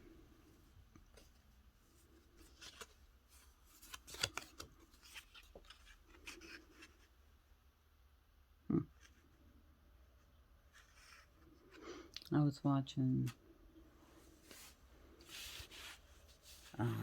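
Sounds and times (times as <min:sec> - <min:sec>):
paper rustling: 0:02.0 - 0:07.2, 0:14.4 - 0:17.0.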